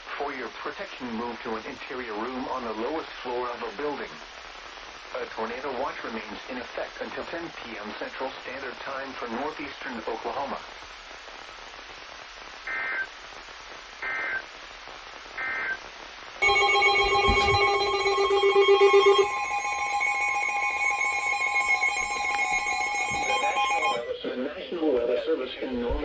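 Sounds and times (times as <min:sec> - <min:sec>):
loud electronic alert tone: 0:16.4 - 0:24.1
short data bursts: 0:16.4 - 0:24.1.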